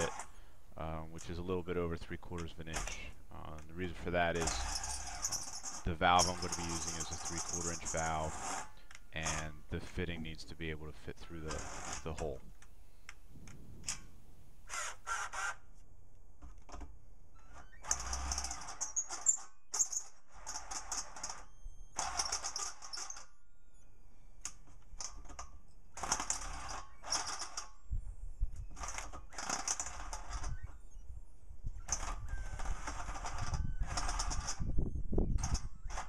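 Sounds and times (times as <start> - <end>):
drill bit grinding into steel: 0.0 - 0.4, 3.9 - 9.5, 11.5 - 12.2, 14.7 - 15.7, 17.4 - 23.4, 25.9 - 27.7, 28.7 - 30.9, 31.8 - 36.0.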